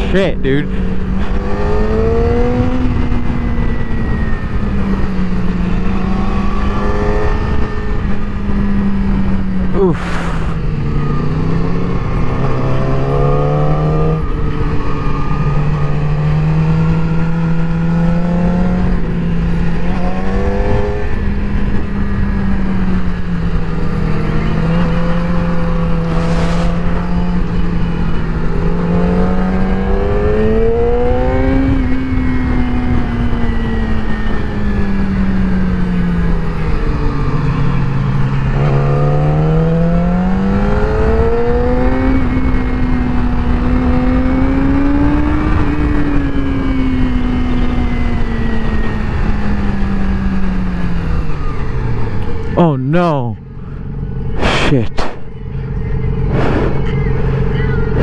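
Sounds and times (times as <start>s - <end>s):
motorcycle engine revving: 0.0s - 52.6s, 55.0s - 58.0s.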